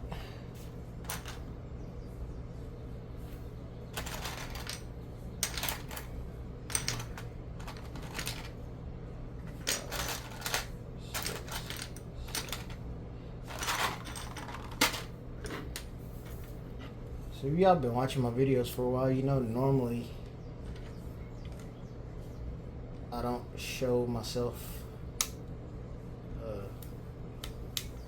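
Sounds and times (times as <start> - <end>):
low steady hum: 0.0 - 28.0
plastic pieces rattling: 1.1 - 1.4, 4.0 - 6.1, 6.7 - 8.6, 9.5 - 12.8, 13.5 - 15.1.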